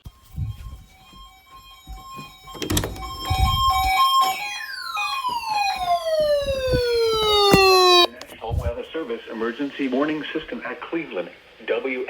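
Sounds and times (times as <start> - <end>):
electronic alert tones: 0.0 - 8.3.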